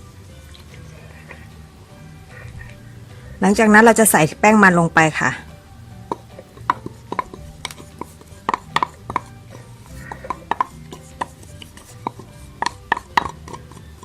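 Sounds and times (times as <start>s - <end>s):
utensil tapping mixing bowl: 6.0s - 14.0s.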